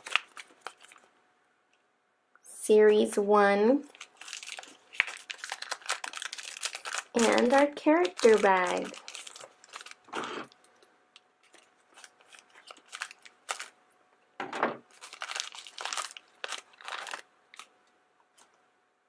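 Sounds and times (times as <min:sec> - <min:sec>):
plastic packet crinkling: 0:00.0 - 0:01.1, 0:03.8 - 0:13.8, 0:14.8 - 0:18.6.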